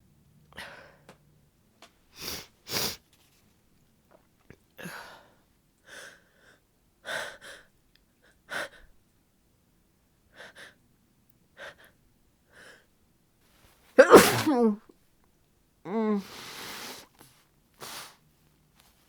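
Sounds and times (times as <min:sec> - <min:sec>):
woman sniffling and gasping: 0:02.2 - 0:03.0, 0:04.8 - 0:07.7, 0:14.0 - 0:14.8, 0:15.9 - 0:17.2
woman sneezing loudly: 0:14.0 - 0:14.8.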